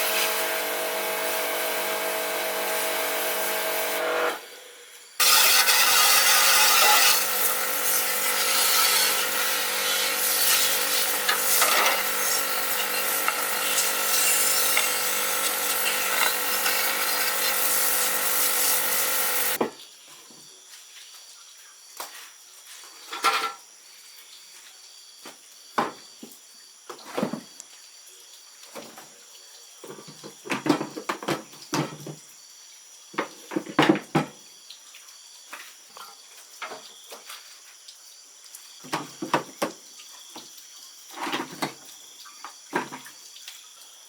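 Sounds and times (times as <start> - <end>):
motor-driven machine rasping: 0.0 - 4.5, 5.2 - 19.6.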